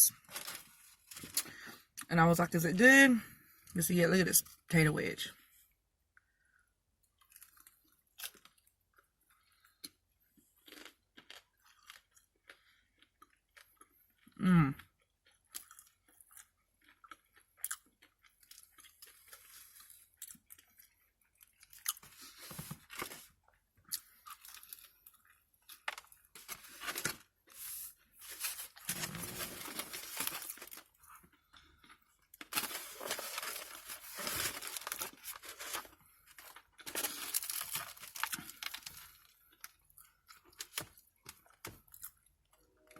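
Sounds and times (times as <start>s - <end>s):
food wrapping rustling: 0.2s - 1.6s, 22.0s - 23.4s, 25.7s - 31.2s, 32.4s - 39.7s
chewing and crunching: 7.0s - 42.7s.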